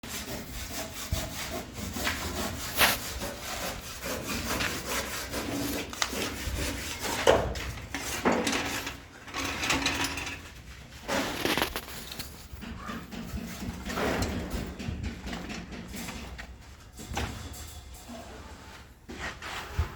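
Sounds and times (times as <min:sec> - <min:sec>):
saw cutting concrete block: 0:00.0 - 0:07.5.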